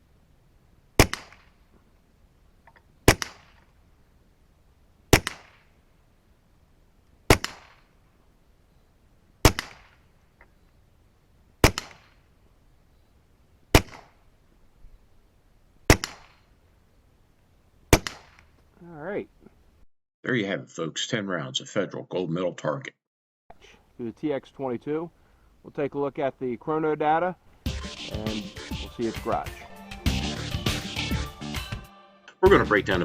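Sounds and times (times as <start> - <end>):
pistol shots with echo: 1.0 - 1.5, 3.1 - 3.6, 5.1 - 5.6, 7.3 - 7.8, 9.4 - 10.0, 11.6 - 12.2, 13.7 - 14.2, 15.9 - 16.4, 17.9 - 18.4.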